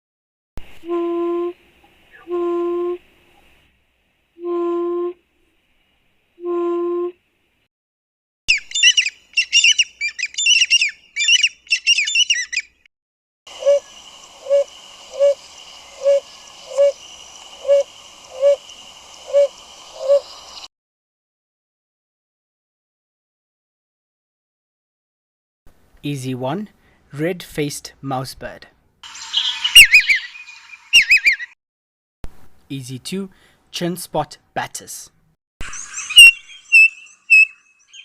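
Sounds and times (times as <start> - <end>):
bird fast high chattering: 8.5 - 12.7, 35.7 - 38.0
bird short low hoots: 13.5 - 15.4
bird low hooting: 13.5 - 20.7
faint insect buzz: 13.5 - 20.7.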